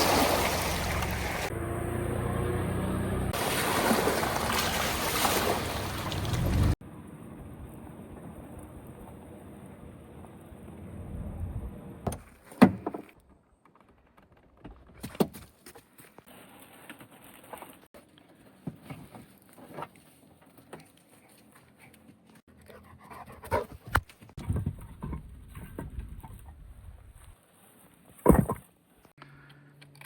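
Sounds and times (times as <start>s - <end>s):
dog panting: 22.6s - 23.8s.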